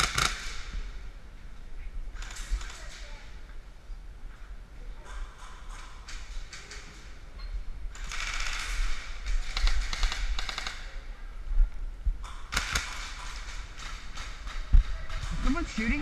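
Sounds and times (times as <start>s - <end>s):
airsoft guns firing: 0.0s - 0.9s, 7.9s - 11.0s, 12.2s - 16.0s.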